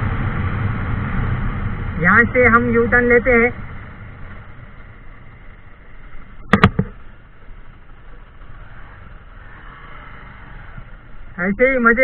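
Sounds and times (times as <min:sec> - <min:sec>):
motorcycle engine running low: 0:00.0 - 0:12.0
sharp knocks: 0:06.4 - 0:07.0.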